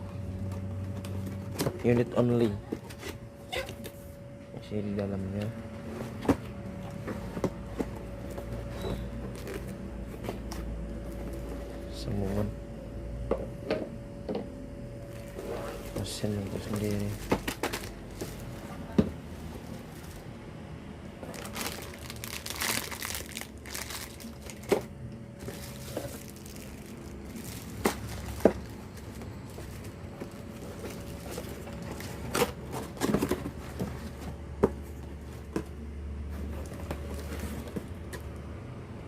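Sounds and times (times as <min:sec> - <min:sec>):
packaging crinkling and rustling: 0:06.1 - 0:12.3, 0:15.0 - 0:18.7, 0:21.2 - 0:35.7, 0:36.3 - 0:38.3.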